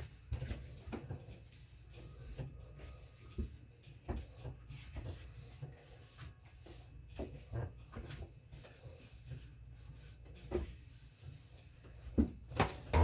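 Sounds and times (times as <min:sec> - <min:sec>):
knocks and clicks wiping fridge: 0:11.8 - 0:13.0.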